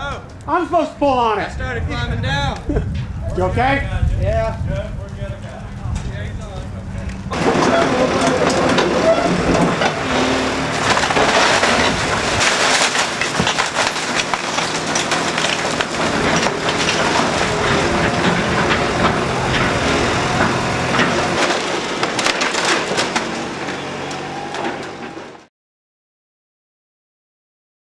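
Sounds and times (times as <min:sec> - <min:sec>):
engine running: 0:04.4 - 0:25.5
wooden timbers cracking and crashing: 0:07.0 - 0:25.5.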